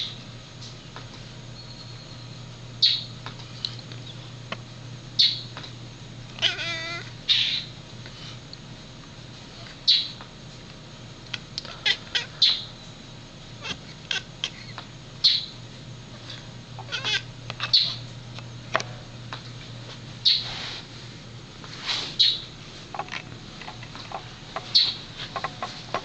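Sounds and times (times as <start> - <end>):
steady low hum: 0.0 - 26.0
cat squeaking and chirping: 6.4 - 7.7, 11.8 - 12.7, 13.6 - 15.5, 16.8 - 18.0, 24.7 - 25.0.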